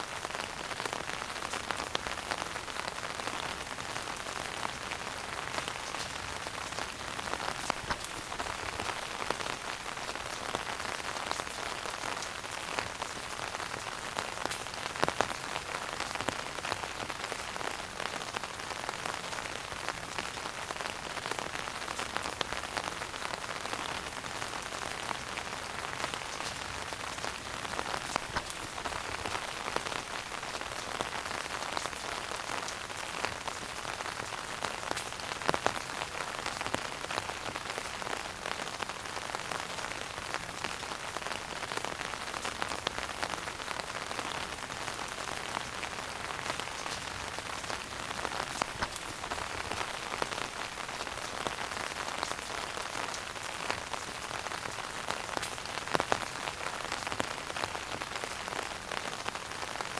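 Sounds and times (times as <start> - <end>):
wood fire crackling: 4.4 - 17.2, 24.8 - 37.7, 44.5 - 58.1.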